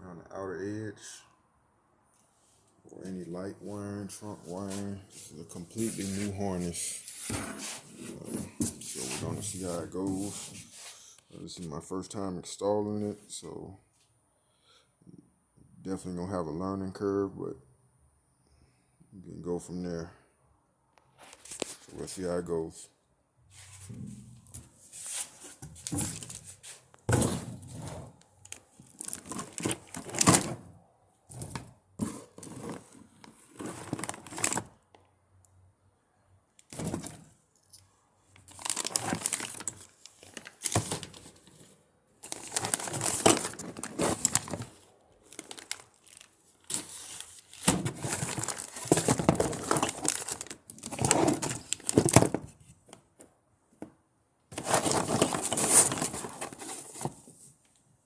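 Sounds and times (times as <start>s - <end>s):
packaging crinkling: 28.4s - 30.6s, 32.3s - 34.7s, 38.5s - 41.4s, 42.2s - 52.3s.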